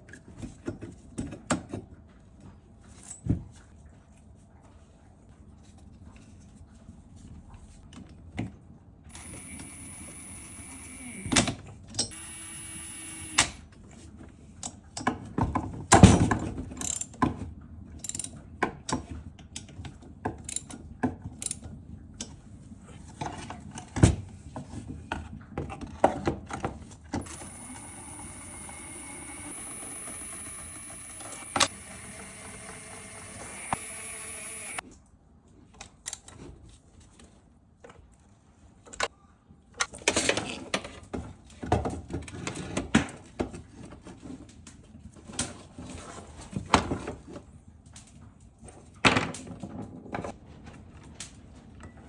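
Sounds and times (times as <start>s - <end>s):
power tool whining: 9.1s - 13.6s, 27.2s - 34.8s.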